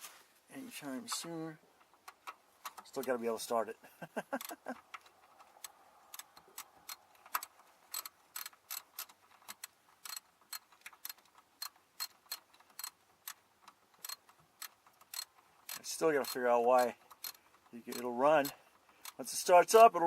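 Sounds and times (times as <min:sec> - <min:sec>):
ratchet wrench clicking: 0:05.6 - 0:13.4, 0:14.0 - 0:19.2.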